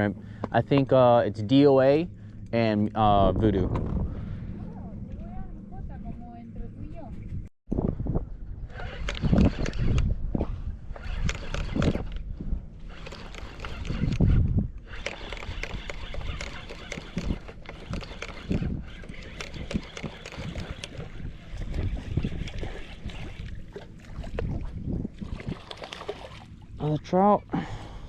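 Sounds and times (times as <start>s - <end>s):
low rumbles: 0.0s - 28.0s
water sloshing around a boat: 14.8s - 27.5s.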